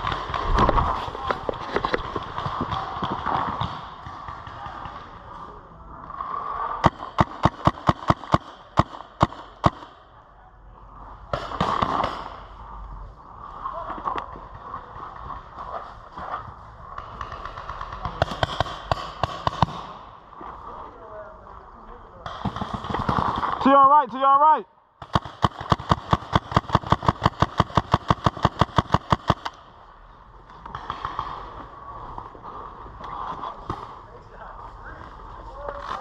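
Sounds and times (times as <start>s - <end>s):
paintball marker firing: 17.0s - 20.1s.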